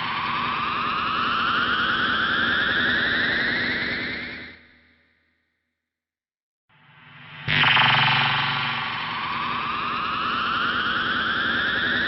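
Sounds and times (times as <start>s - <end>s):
rising tone with overtone: 7.5s - 11.2s.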